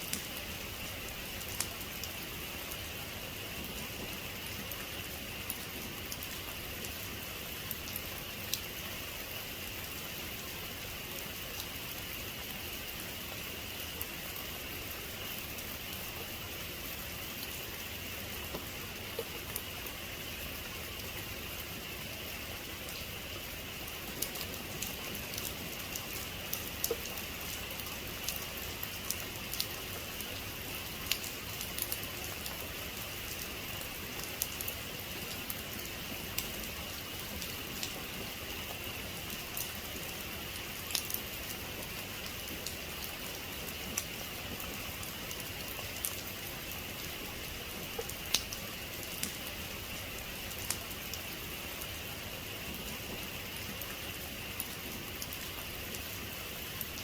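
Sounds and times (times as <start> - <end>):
raindrops pattering on a surface: 0.0 - 57.0
heavy rain falling: 13.7 - 57.0.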